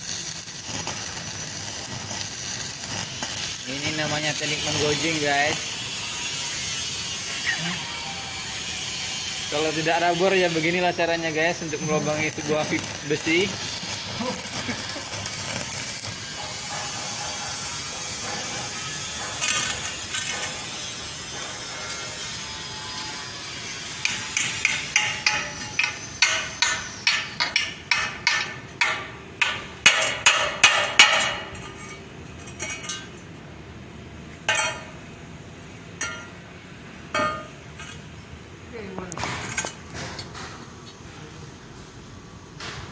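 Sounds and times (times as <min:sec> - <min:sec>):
welding arc crackling and hissing: 0:00.0 - 0:31.4.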